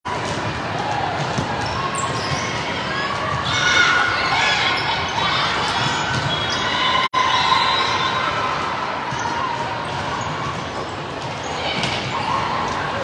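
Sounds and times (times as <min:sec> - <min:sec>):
voices of players and spectators: 0:00.0 - 0:13.0
ball bouncing in a gym: 0:00.1 - 0:03.6.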